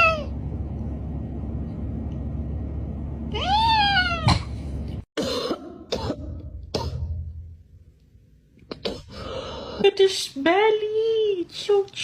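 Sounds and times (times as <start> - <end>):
cat meowing: 3.3 - 4.3.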